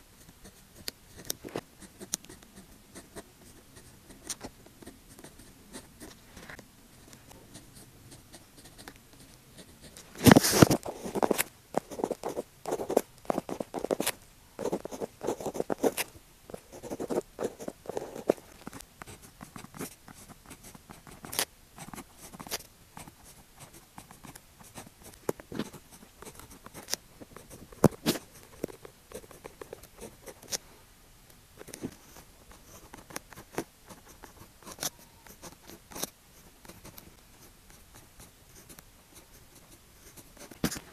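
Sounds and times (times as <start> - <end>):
pen writing on paper: 7.5 - 16.0, 16.6 - 18.4, 19.0 - 30.6.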